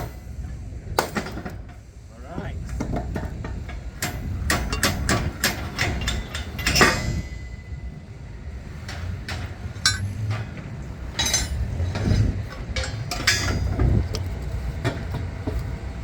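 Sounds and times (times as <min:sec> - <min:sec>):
low steady rumble: 0:07.2 - 0:14.8
metal clinking and knocking: 0:09.8 - 0:10.2, 0:11.2 - 0:11.8.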